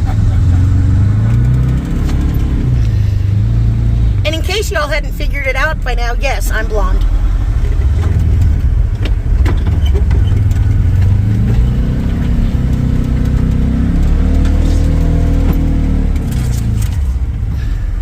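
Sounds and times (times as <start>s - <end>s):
vehicle engine running: 0.0s - 18.0s
knocks and rattles: 7.6s - 17.4s.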